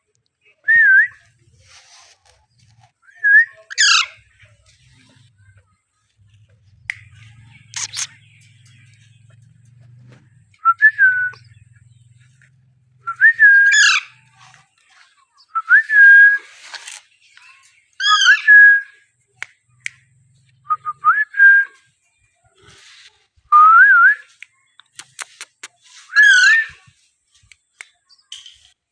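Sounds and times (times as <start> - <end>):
parakeet whistled calls: 3.7 - 4.2, 7.7 - 8.2, 13.5 - 14.2, 18.0 - 18.5, 26.1 - 26.7
sharp clicks: 24.4 - 25.8.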